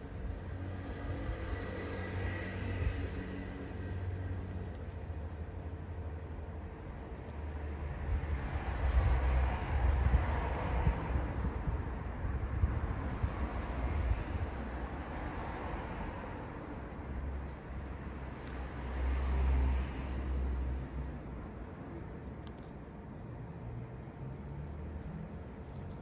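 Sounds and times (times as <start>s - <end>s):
low rumble of road traffic: 0.0s - 26.0s
vehicle passing: 0.4s - 6.2s, 7.5s - 21.3s.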